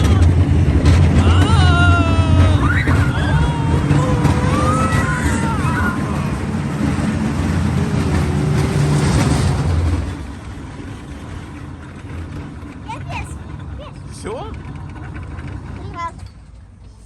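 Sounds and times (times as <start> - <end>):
fairground ride rumbling on track: 0.0 - 17.0
high wavering shrieks: 1.2 - 10.0.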